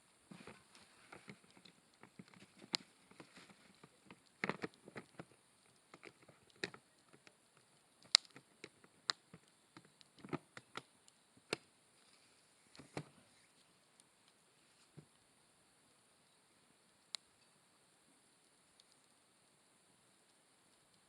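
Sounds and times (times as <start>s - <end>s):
campfire crackling: 0.0s - 21.0s.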